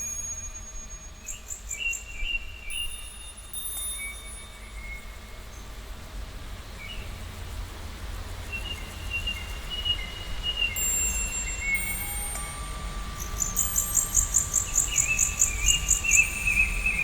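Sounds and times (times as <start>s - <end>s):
steady low rumble: 5.1s - 17.0s
high whistling tones: 10.7s - 17.0s.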